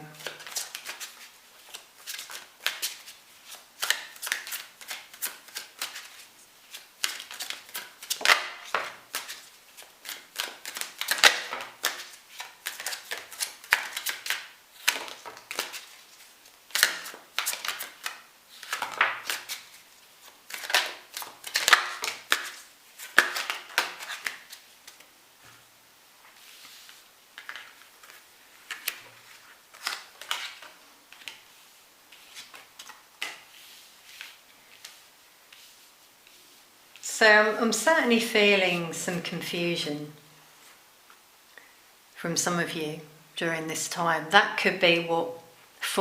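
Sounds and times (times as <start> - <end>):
cards being shuffled: 0.2 - 25.1, 26.3 - 36.4.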